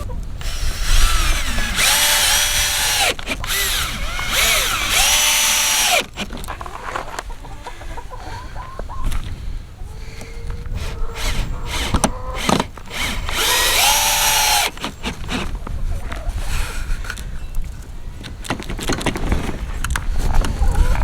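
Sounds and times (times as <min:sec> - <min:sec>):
cordless drill driving screws: 0:00.4 - 0:06.5, 0:10.8 - 0:15.6.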